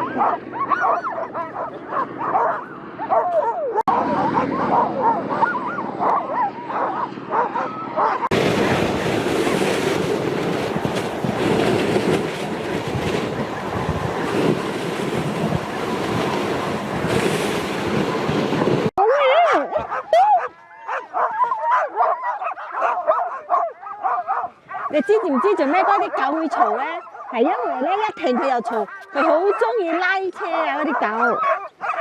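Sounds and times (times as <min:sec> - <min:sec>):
huskies whining and yipping: 0:00.0 - 0:32.0
wind on microphone: 0:08.3 - 0:19.0.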